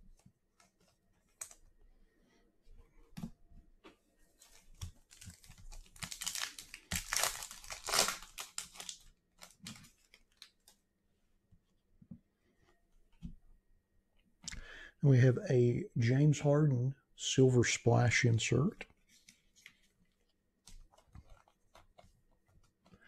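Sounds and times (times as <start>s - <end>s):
foil wrapper tearing and crinkling: 5.1s - 10.5s.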